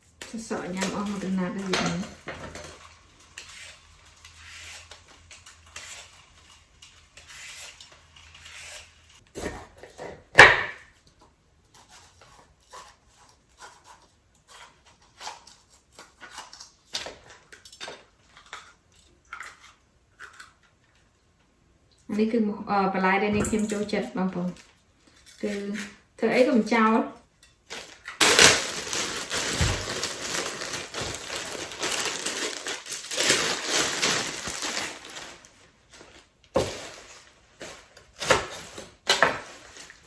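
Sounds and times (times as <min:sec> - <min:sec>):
kitchen utensils clattering: 0:23.3 - 0:24.0.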